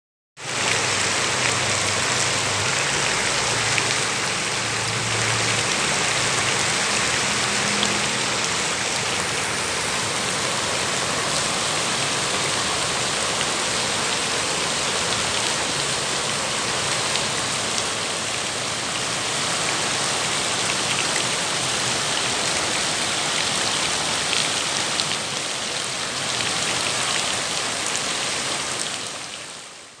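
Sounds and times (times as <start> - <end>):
steady rain: 0.4 - 30.0.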